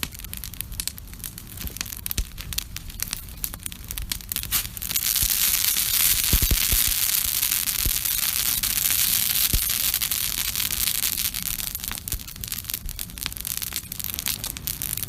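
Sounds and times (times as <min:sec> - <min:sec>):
campfire crackling: 0:00.0 - 0:15.0.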